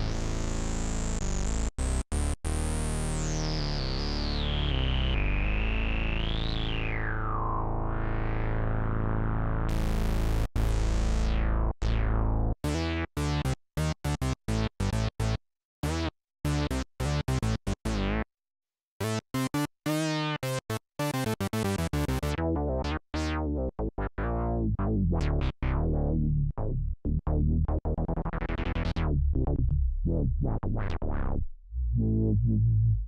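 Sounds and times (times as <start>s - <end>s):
plucky synthesizer notes: 22.2s - 33.0s.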